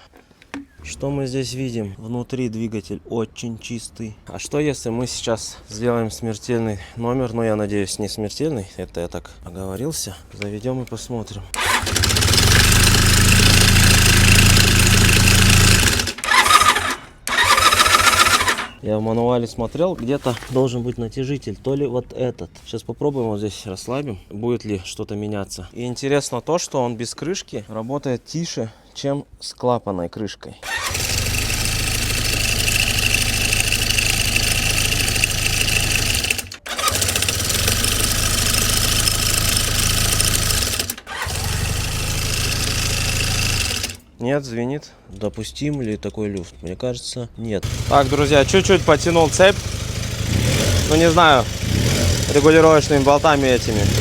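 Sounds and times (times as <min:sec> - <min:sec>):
engine knocking: 0:11.6 - 0:18.7, 0:30.7 - 0:44.0, 0:47.6 - 0:54.0
motorcycle engine running: 0:11.6 - 0:18.7, 0:30.6 - 0:44.0, 0:47.6 - 0:54.0.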